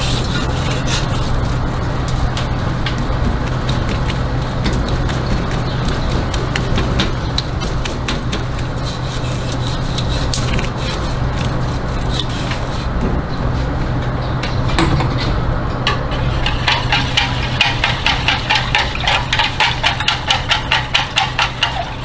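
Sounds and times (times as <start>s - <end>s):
metal utensils tapping pan: 14.4s - 22.0s.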